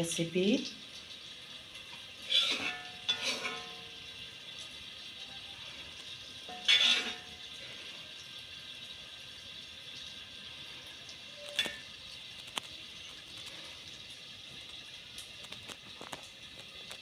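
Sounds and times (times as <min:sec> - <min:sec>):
faint sizzling hiss: 0:00.0 - 0:17.0
kitchenware clink: 0:02.3 - 0:03.9, 0:06.5 - 0:07.4.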